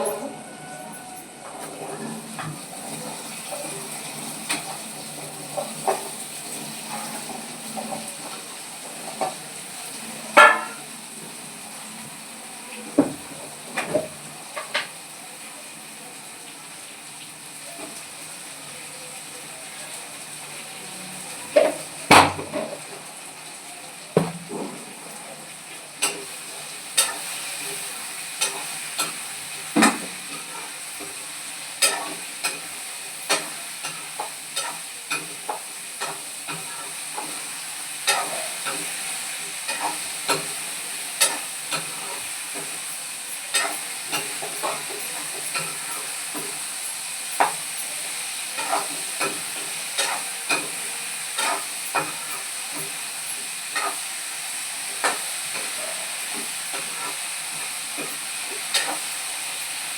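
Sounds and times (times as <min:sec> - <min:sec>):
food sizzling in hot oil: 0:00.0 - 0:59.9
spatula knocking and scraping pan: 0:10.4 - 0:10.8.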